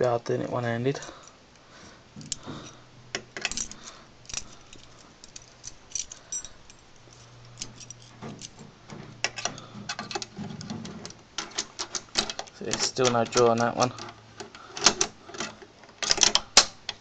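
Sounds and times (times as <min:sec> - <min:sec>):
keys jingling on ring: 0:03.4 - 0:08.6
key clicking and scraping in lock: 0:03.4 - 0:17.0.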